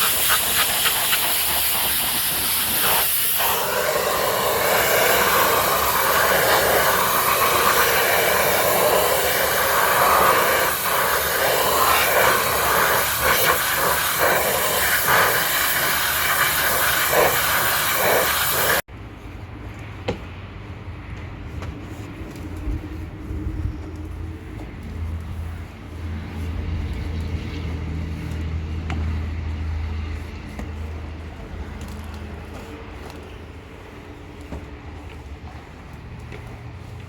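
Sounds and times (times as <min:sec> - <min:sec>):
pressure washer spraying water: 0:00.0 - 0:18.9.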